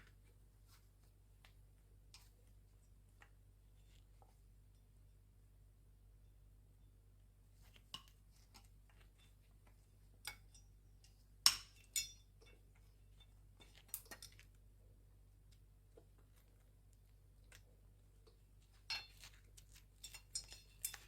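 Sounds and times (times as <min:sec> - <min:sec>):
faint low hum: 0:00.0 - 0:21.0.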